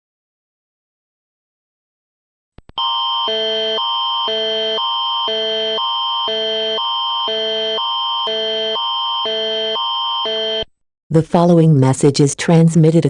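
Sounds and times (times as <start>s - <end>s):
electronic alarm tone: 2.8s - 10.7s.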